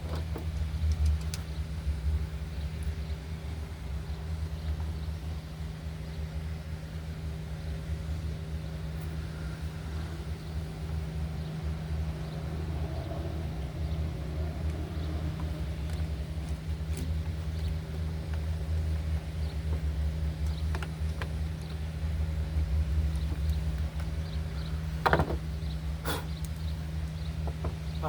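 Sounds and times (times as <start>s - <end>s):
faint small clicks: 0.6s - 1.5s.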